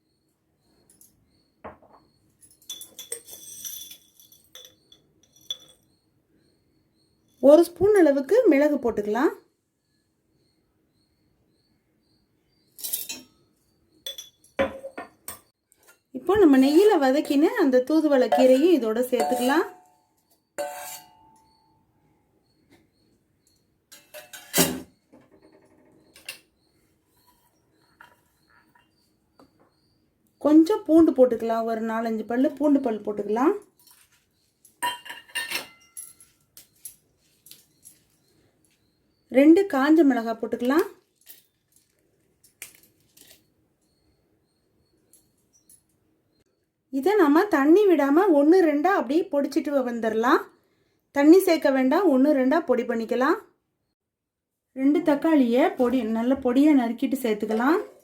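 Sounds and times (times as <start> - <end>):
spoon knocking in metal pan: 18.2 - 19.9.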